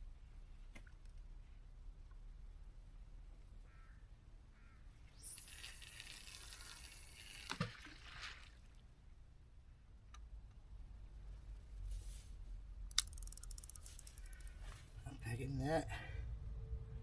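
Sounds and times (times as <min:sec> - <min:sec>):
fishing line hissing off reel: 0:05.1 - 0:07.8, 0:12.9 - 0:14.6.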